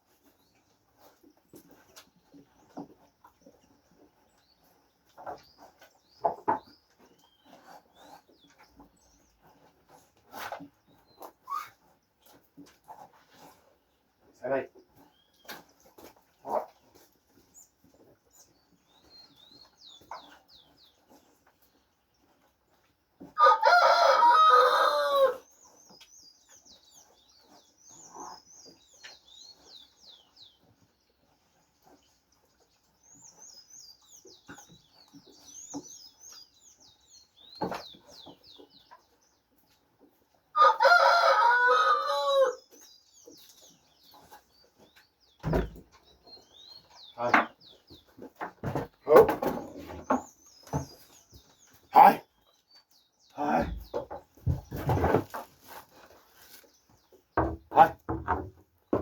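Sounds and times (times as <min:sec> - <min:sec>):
small birds chirping: 0:00.0 - 0:59.0
rooster crowing: 0:23.4 - 0:25.4, 0:40.6 - 0:42.6.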